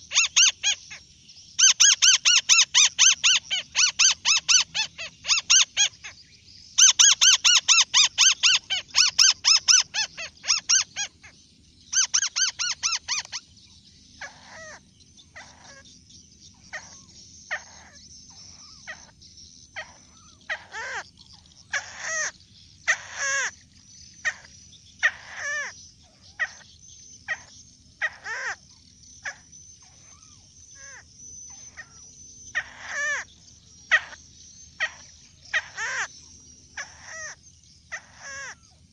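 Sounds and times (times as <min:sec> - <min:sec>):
bird calling: 0:00.0 - 0:38.9.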